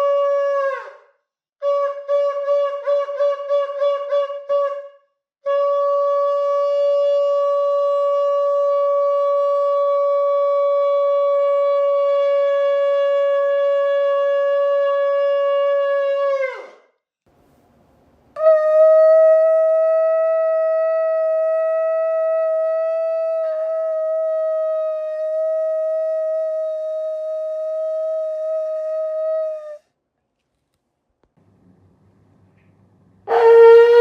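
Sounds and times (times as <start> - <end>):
shofar long held note: 5.5 - 16.6, 18.4 - 29.8, 33.3 - 34.0.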